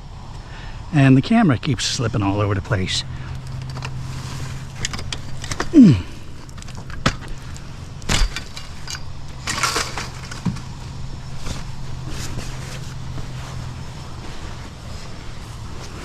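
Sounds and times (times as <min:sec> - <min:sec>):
vehicle engine idling: 0:00.0 - 0:16.0
knocks and clatter: 0:08.1 - 0:10.8.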